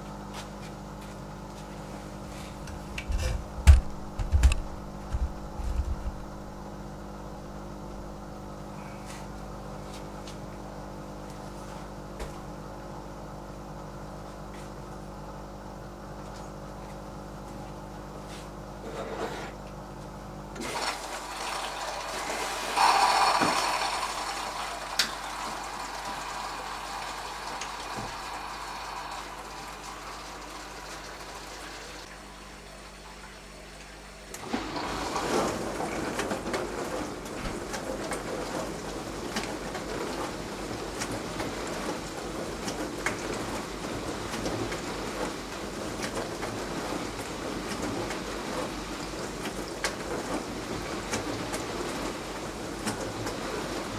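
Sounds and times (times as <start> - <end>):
dishwasher motor hum: 0.0 - 53.9
water rushing into dishwasher: 20.6 - 33.5, 34.2 - 53.9.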